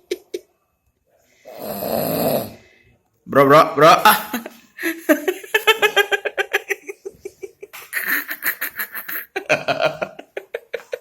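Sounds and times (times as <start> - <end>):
stifled giggling: 4.1 - 11.0.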